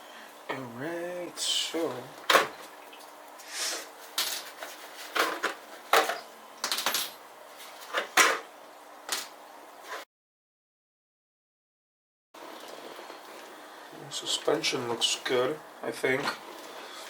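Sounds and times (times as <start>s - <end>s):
scraping rustles: 3.4s - 6.2s.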